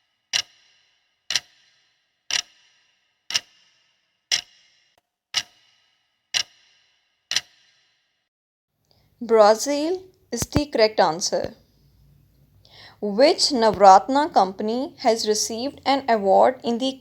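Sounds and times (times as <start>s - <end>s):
clock ticks with metallic ring: 0.0s - 7.9s.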